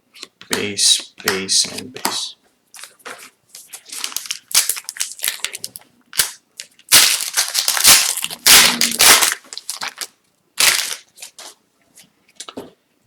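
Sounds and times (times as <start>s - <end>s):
foil wrapper crinkling: 2.8s - 11.4s.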